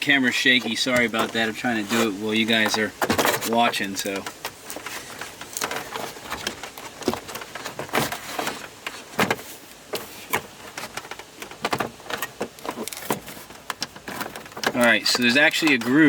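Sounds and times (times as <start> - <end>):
dash cover knocking and scraping: 0.0 - 16.0.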